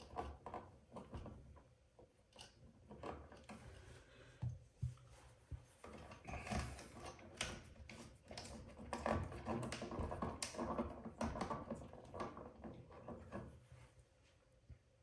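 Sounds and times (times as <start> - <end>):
small clicks and scrapes of wiring: 2.3 - 3.9.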